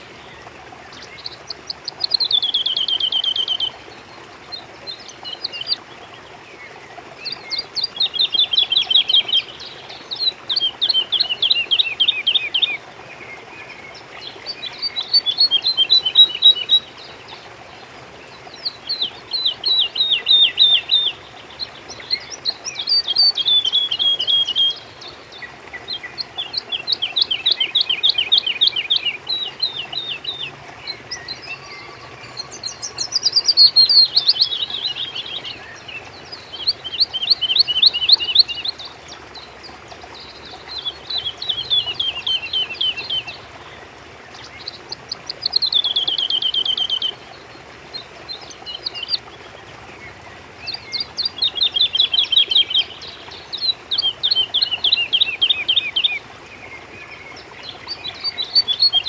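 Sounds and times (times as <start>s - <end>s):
songbird singing: 0.0s - 59.0s.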